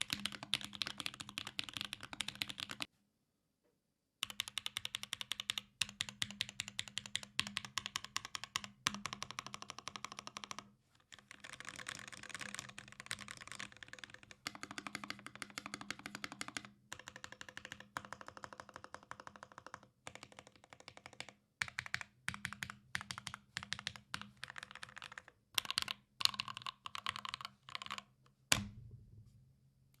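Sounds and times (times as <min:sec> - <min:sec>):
typing on mechanical keyboard: 0:00.0 - 0:02.9, 0:04.2 - 0:28.1.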